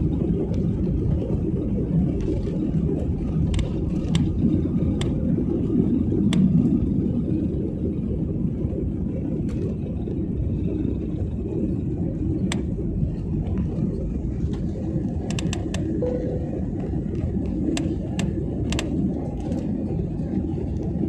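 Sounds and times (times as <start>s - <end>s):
airliner cabin rumble: 0.0s - 21.0s
faint clicks: 5.0s - 5.3s, 6.3s - 6.6s, 14.5s - 16.0s, 17.2s - 19.7s.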